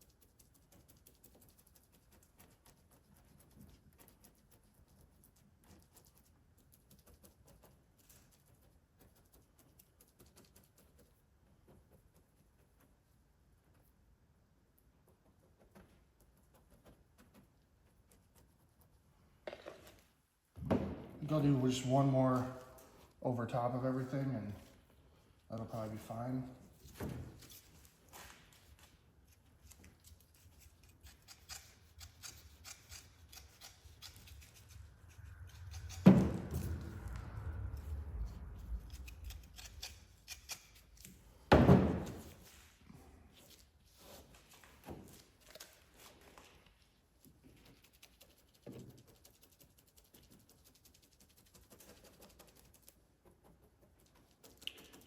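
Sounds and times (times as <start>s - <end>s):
loud knock: 20.6s - 21.2s, 35.9s - 36.9s
soft thump: 20.6s - 21.2s
scissors snipping: 29.6s - 34.8s, 38.9s - 41.2s.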